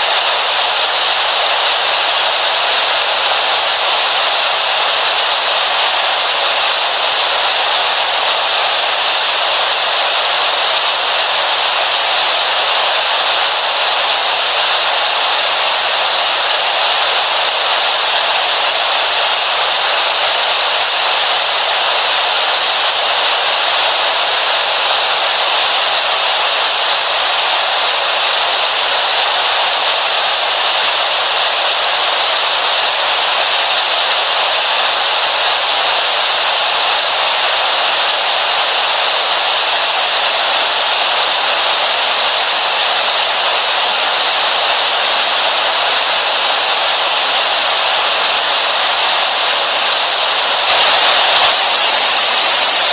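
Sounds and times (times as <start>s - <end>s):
television static hiss: 44.7s - 52.9s.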